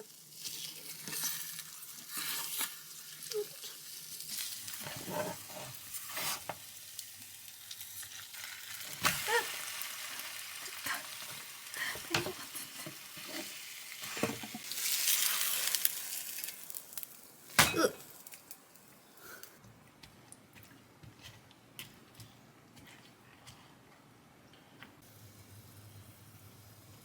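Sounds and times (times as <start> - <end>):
food sizzling in oil: 0.0 - 18.8.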